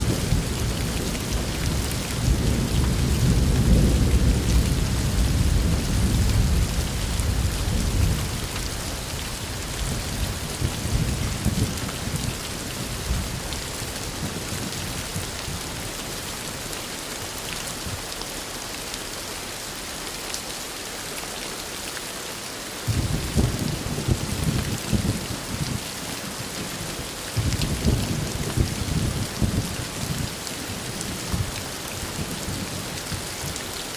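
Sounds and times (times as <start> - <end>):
thunder rumbling: 0.0 - 8.6, 22.9 - 25.8, 27.4 - 30.3
heavy rain hissing: 0.0 - 33.9.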